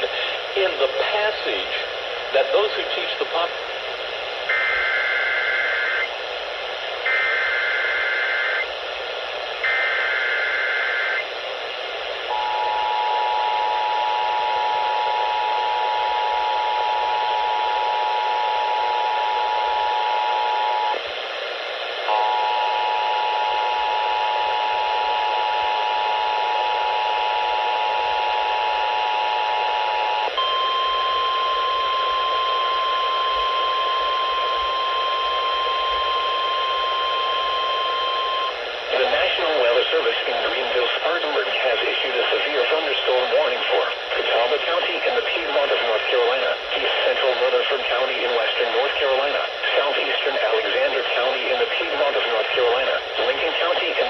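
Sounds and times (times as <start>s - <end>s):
radio static hiss: 0.0s - 54.0s
screeching data bursts: 4.5s - 6.1s, 7.1s - 8.7s, 9.6s - 11.2s
two-tone attention signal: 12.3s - 17.7s, 30.4s - 38.5s
single steady tone: 12.3s - 21.0s.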